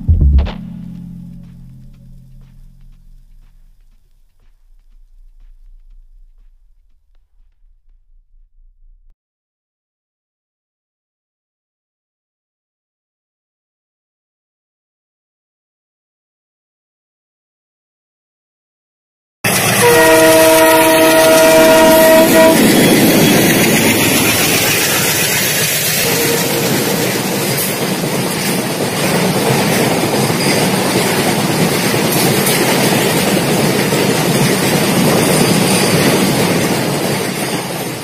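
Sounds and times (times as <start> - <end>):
train horn: 19.5 - 23.5, 26.0 - 27.8
train wheels rumbling on rails: 19.5 - 38.0.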